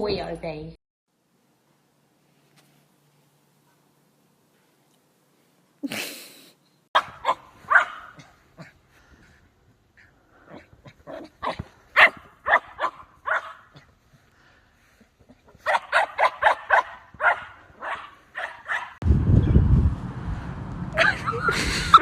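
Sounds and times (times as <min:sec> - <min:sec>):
dog barking in high yips: 0:07.0 - 0:08.3, 0:11.1 - 0:13.8, 0:15.6 - 0:19.0
loud low rumbling: 0:19.0 - 0:22.0.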